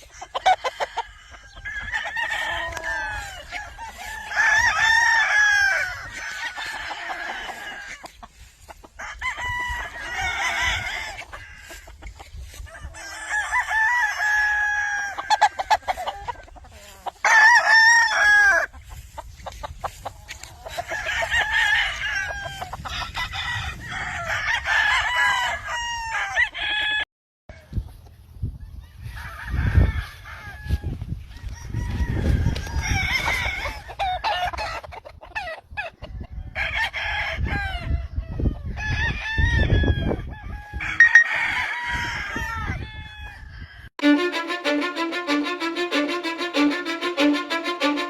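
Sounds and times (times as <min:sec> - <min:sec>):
chickens clucking: 0:00.0 - 0:04.6, 0:05.6 - 0:13.4, 0:14.9 - 0:17.4
roosters crowing: 0:00.0 - 0:19.1, 0:19.9 - 0:27.0, 0:29.1 - 0:34.8, 0:38.7 - 0:43.9.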